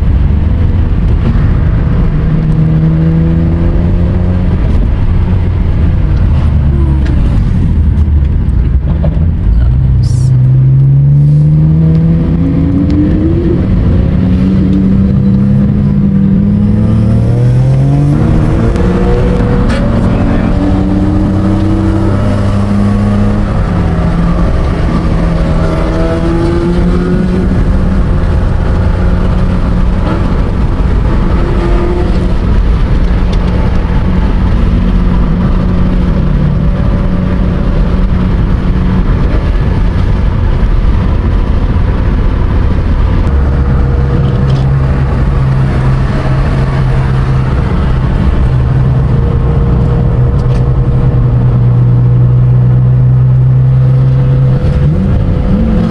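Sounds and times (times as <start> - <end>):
race car engine revving: 0.0 - 55.9.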